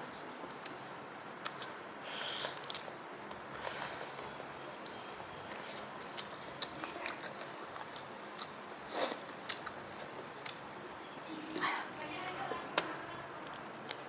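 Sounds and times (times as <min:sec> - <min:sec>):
person chewing with mouth smacks: 0:00.6 - 0:14.0.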